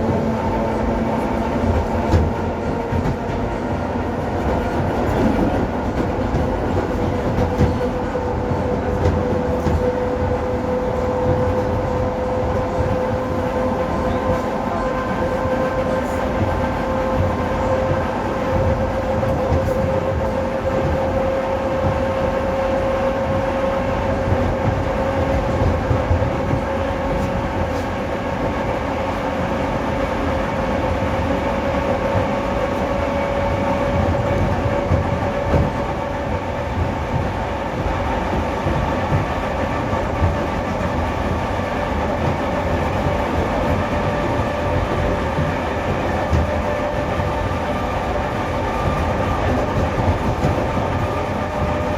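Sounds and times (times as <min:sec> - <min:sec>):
train rumble and rail clatter: 0:00.0 - 0:51.9.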